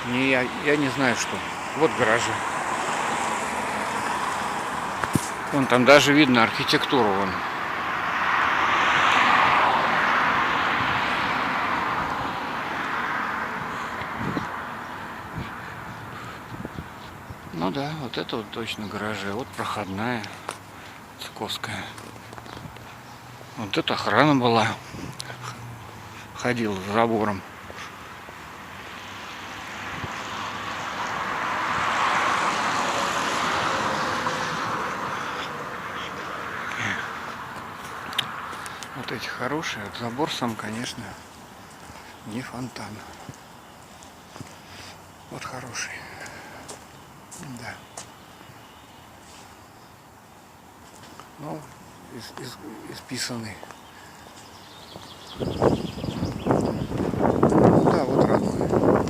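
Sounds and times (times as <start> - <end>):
car driving past: 0.0 - 16.4, 21.5 - 43.1
vehicle passing: 0.0 - 59.0.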